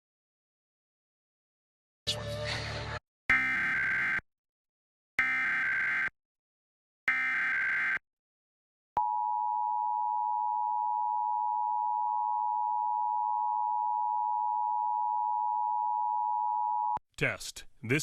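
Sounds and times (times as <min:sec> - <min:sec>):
buzzy data warble: 0:07.1 - 0:08.0.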